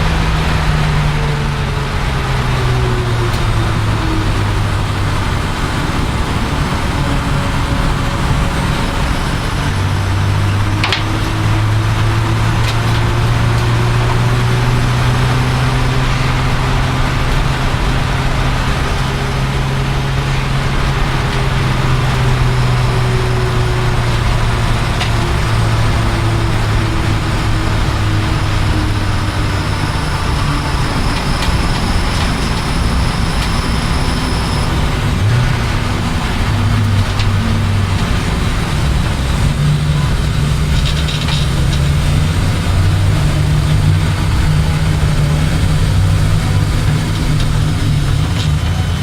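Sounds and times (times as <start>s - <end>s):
broad noise: 0.0s - 49.0s
vehicle engine running: 0.0s - 49.0s.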